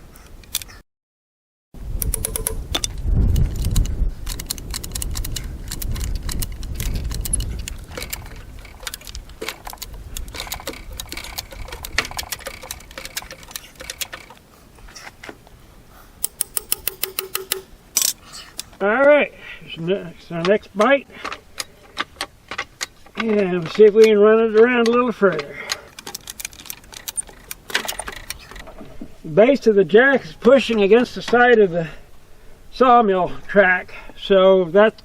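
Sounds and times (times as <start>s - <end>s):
jack ratcheting clicks: 2.0s - 14.4s, 16.2s - 18.7s, 26.0s - 28.6s.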